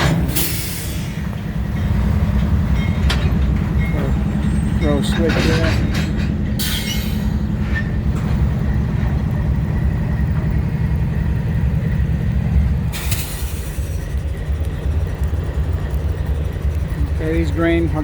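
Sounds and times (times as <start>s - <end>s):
diesel locomotive rumbling: 0.0s - 18.0s
hiss: 0.3s - 1.2s, 12.9s - 14.2s.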